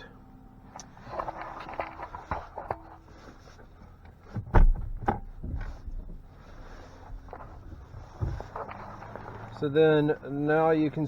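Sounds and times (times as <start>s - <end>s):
heavy thump: 4.3s - 6.2s.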